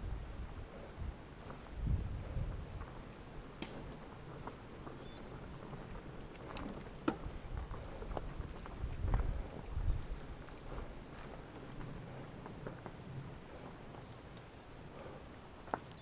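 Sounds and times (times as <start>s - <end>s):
wind: 0.0s - 16.0s
bike clicks and knocks: 2.8s - 9.7s.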